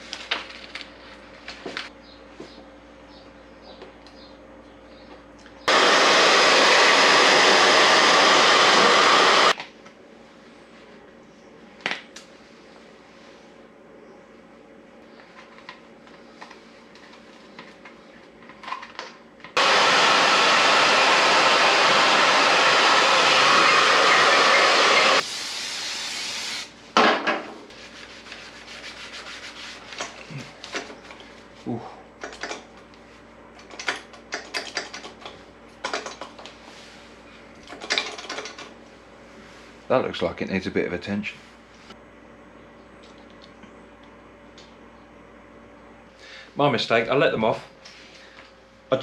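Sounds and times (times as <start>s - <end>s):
hot-air blower running: 5.6s - 9.6s, 19.5s - 27.6s.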